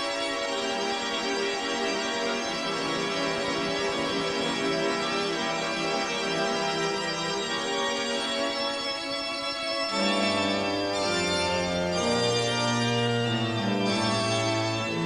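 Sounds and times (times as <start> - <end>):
organ chords: 0.0 - 15.0.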